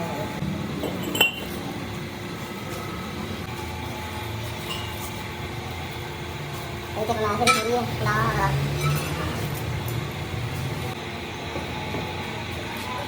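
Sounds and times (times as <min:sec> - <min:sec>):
steady background hum: 0:00.0 - 0:13.0
metallic clink with short ring: 0:01.0 - 0:01.5.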